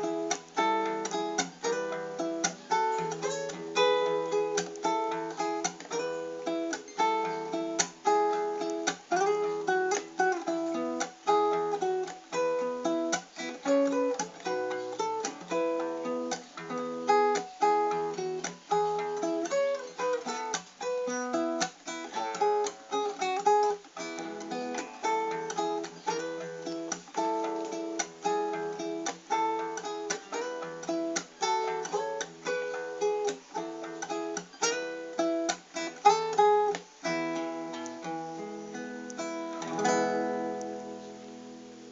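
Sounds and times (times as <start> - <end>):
acoustic guitar playing: 0.0 - 41.9.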